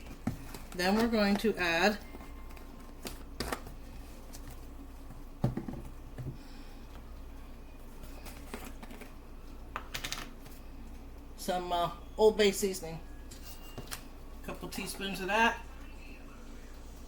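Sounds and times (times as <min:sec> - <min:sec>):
low steady hum: 0:00.0 - 0:17.0
containers knocking and clicking: 0:05.4 - 0:06.4.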